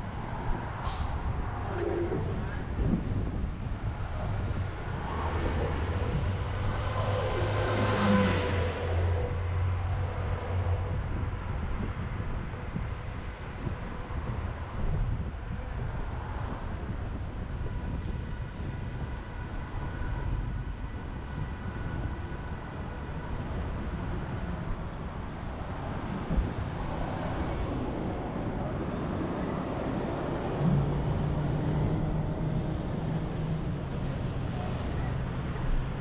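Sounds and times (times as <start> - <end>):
traffic rumble: 0.0 - 36.0.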